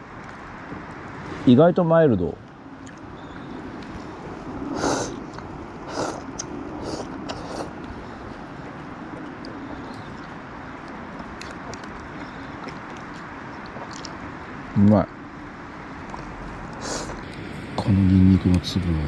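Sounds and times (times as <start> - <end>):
steady background hiss: 0.0 - 19.0
person slurping soup: 4.7 - 7.8.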